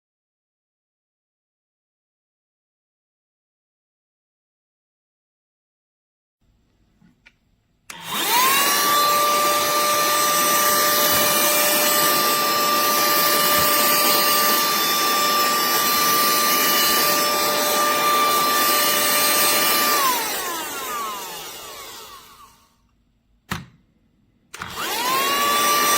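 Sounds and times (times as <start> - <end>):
handheld vacuum motor whining: 7.9 - 22.9, 24.6 - 25.9.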